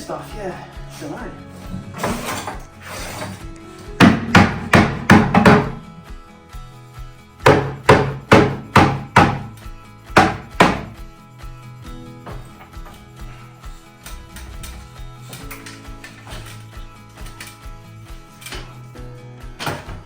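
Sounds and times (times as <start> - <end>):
hammer blows on masonry: 4.0 - 5.9, 7.4 - 11.0.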